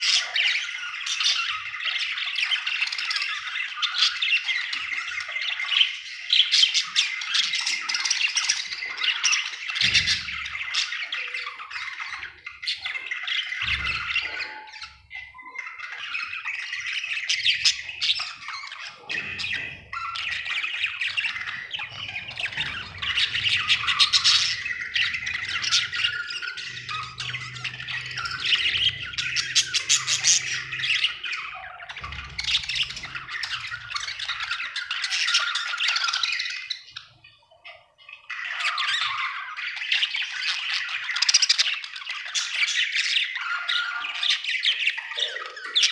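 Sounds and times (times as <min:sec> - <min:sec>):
budgerigar chattering and warbling: 0:06.6 - 0:37.2.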